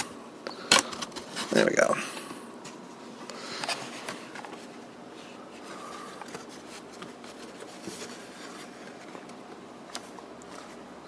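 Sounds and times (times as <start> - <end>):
paper and cardboard rustling: 0.7 - 1.8, 3.4 - 10.8.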